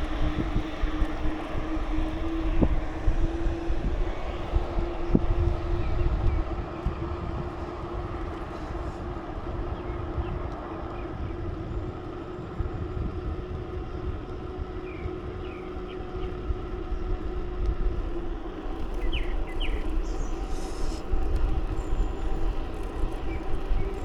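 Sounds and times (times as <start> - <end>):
wind rumbling on microphone: 0.0 - 24.0
bicycle tyre noise: 11.7 - 24.0.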